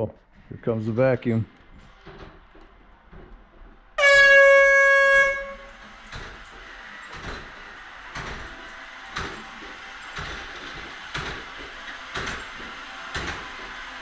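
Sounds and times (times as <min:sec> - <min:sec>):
loud horn-like tone: 0:04.0 - 0:05.9.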